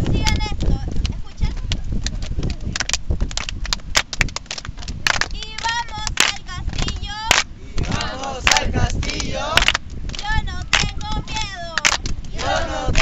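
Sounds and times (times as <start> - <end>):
wind rumble on microphone: 0.0 - 13.0
sharp hand claps: 0.2 - 13.0
children and woman chanting: 5.5 - 13.0.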